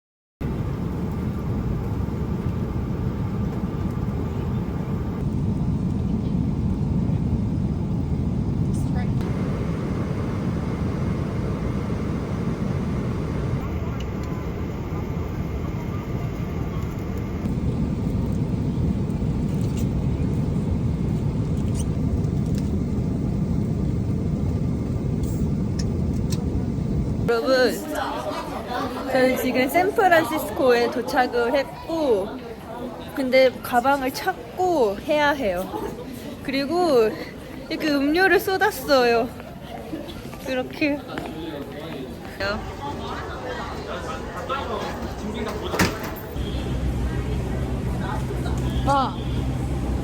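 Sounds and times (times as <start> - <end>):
jet airliner cabin rumble: 0.4 - 27.3, 42.4 - 50.0.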